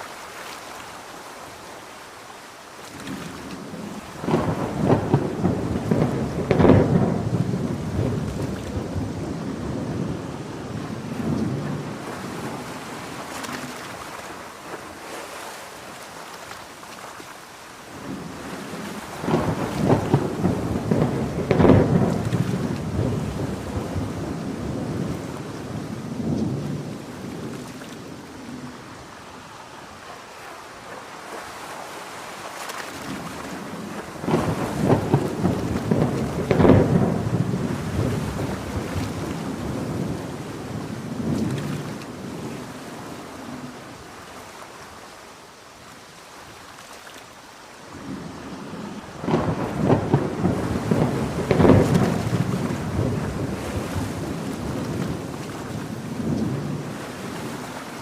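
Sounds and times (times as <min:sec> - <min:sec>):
rain hissing: 0:00.0 - 0:16.8, 0:17.4 - 0:46.4, 0:47.5 - 0:58.0
thunder rolling: 0:03.6 - 0:14.1, 0:18.0 - 0:29.1, 0:33.0 - 0:43.8, 0:48.0 - 0:58.0.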